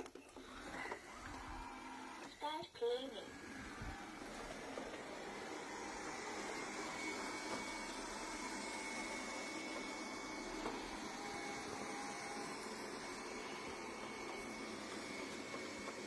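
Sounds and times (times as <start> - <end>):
robot vacuum cleaner whirring: 0.0 - 16.0.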